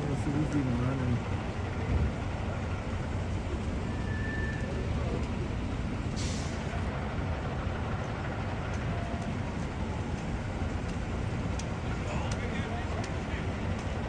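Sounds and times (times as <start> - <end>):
heavy vehicle engines idling: 0.0 - 14.0
air brake hiss: 6.1 - 6.8.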